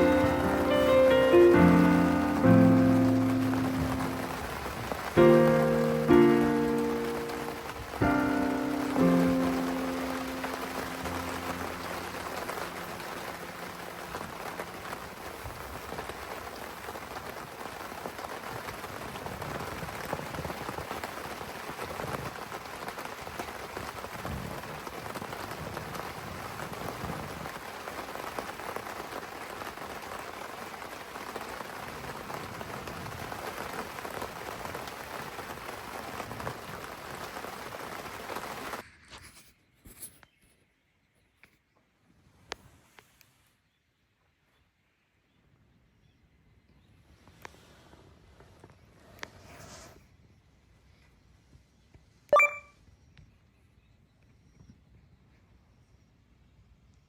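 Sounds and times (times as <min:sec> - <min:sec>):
steady rain falling: 0:00.0 - 0:38.8.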